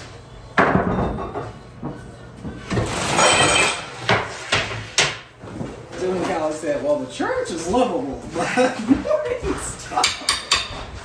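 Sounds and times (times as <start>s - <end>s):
dishes clattering: 0.5s - 6.6s, 7.6s - 11.0s.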